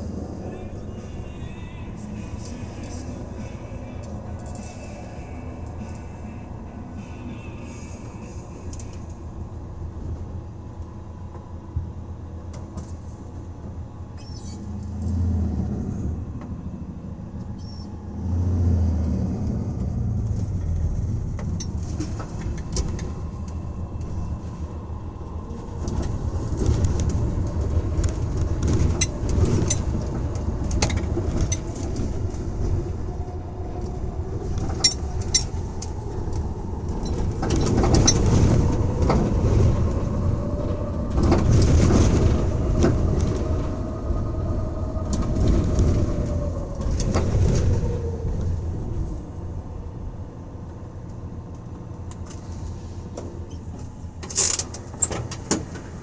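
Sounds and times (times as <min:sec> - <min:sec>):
van engine rumble: 0:00.0 - 0:56.0
rattles and clicks: 0:19.0 - 0:49.3, 0:51.1 - 0:56.0.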